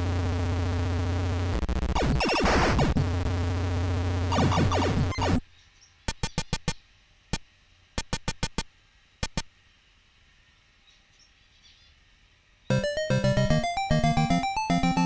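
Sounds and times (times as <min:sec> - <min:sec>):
sharp quick clicks: 0:08.0 - 0:09.5.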